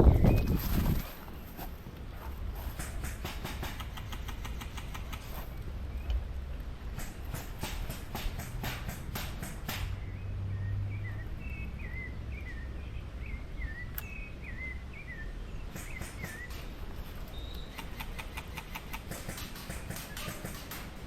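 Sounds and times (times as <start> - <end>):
bird chirping: 0.0 - 1.7, 2.7 - 21.0
footsteps through dry vegetation: 0.0 - 2.6
outdoor ambience: 0.0 - 21.0.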